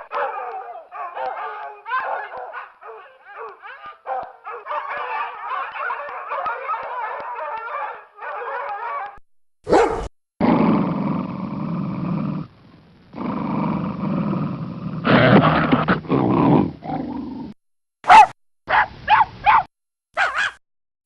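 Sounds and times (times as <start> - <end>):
dogs yapping and whining: 0.1 - 10.1, 18.1 - 20.6
short loud dog bark: 9.6 - 10.1, 18.0 - 20.6.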